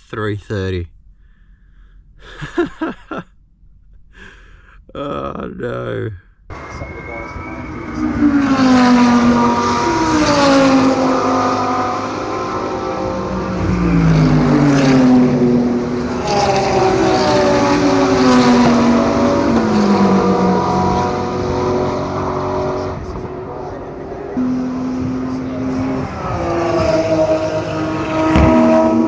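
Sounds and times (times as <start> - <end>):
race cars passing at speed: 6.5 - 29.0.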